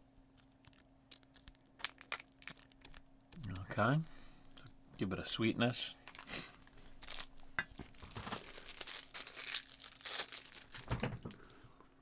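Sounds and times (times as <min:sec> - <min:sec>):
plastic packaging crinkling and tearing: 0:00.5 - 0:03.5, 0:06.1 - 0:11.4.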